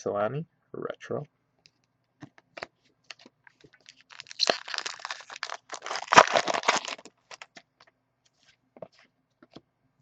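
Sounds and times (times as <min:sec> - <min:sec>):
card packaging crinkling: 0:03.1 - 0:07.7.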